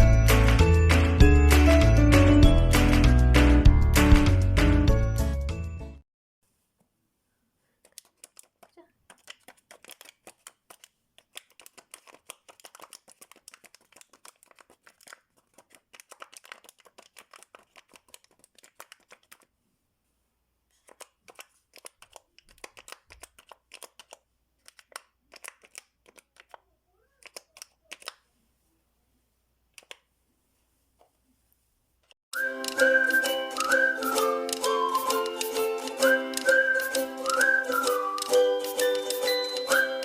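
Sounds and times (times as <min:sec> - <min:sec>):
paper toy clicking and crinkling: 0:07.8 - 0:19.5, 0:20.7 - 0:28.2, 0:32.4 - 0:40.0.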